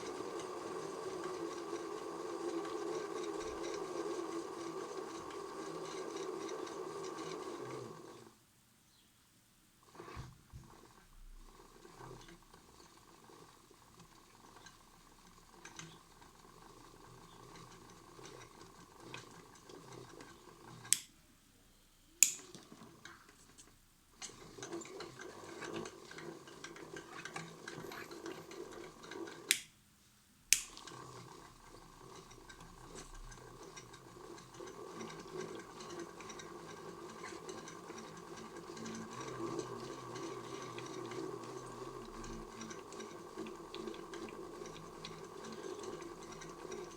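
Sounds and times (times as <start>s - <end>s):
sharp click: 22.2s - 22.6s, 29.5s - 29.8s, 30.5s - 30.8s.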